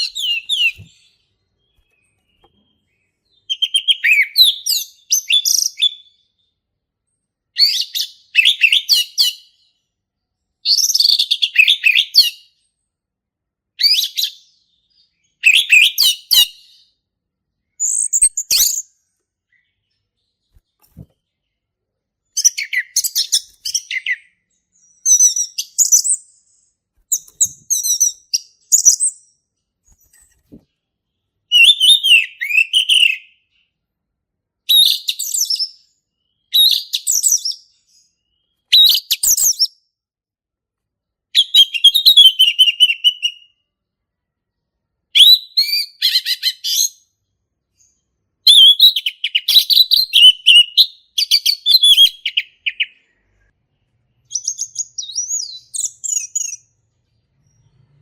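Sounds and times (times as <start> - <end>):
thrush singing whistles and chirps: 0.0 - 6.5, 7.6 - 9.8, 10.6 - 12.7, 13.8 - 17.0, 17.6 - 19.8, 22.3 - 30.2, 31.5 - 33.6, 34.7 - 39.9, 41.4 - 43.6, 45.1 - 47.2, 47.8 - 53.2, 54.2 - 58.0.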